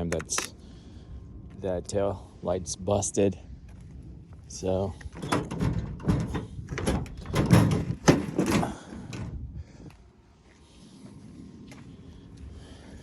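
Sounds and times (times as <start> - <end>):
knocks and bumps: 5.1 - 9.4.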